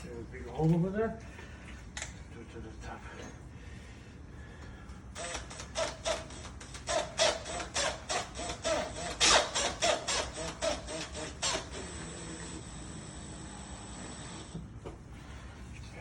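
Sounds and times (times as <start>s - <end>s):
hand tool cutting wood: 5.2s - 12.6s.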